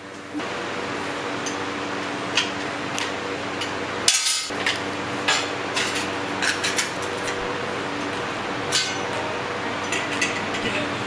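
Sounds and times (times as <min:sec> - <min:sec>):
steady hum: 0:04.5 - 0:11.0.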